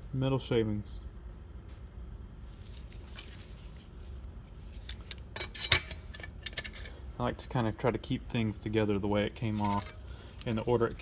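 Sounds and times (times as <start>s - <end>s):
metal clutch plates clinking: 5.0s - 7.0s, 9.5s - 10.1s.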